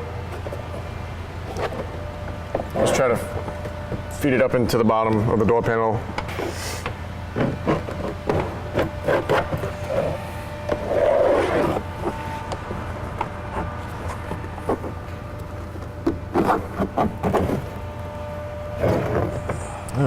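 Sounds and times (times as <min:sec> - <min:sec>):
plastic tool scraping door panel: 0:16.3 - 0:17.7.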